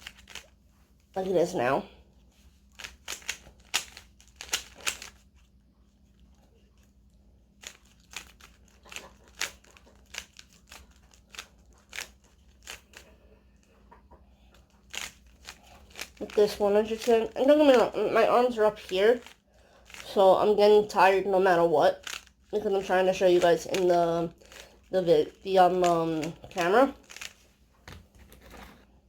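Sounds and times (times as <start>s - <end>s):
puzzle cube clicking and scraping: 0.0s - 0.5s, 2.6s - 5.4s, 7.6s - 13.7s, 14.3s - 20.2s, 22.0s - 27.4s.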